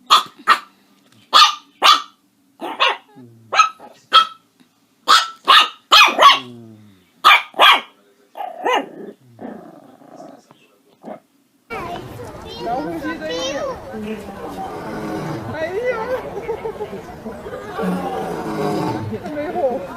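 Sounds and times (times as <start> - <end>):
dog barking: 0.1 - 0.7, 1.3 - 4.4, 5.1 - 6.6, 7.2 - 8.9.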